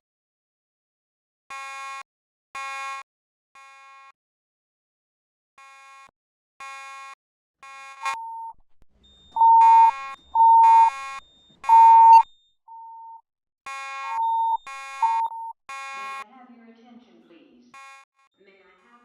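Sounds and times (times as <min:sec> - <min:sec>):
pure beeping alarm tone: 0:08.0 - 0:08.5, 0:09.4 - 0:11.0, 0:11.7 - 0:13.2, 0:14.1 - 0:15.5
harsh buzzy alarm tone pulsing: 0:09.4 - 0:10.9, 0:11.7 - 0:16.0.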